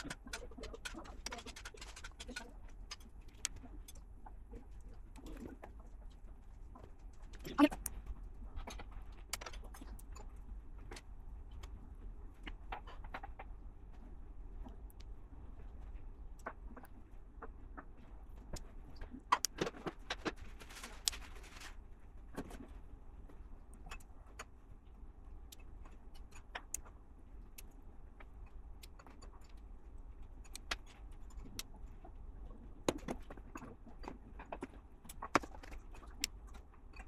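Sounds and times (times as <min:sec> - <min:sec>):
plastic bricks clicking: 0:00.0 - 0:03.6.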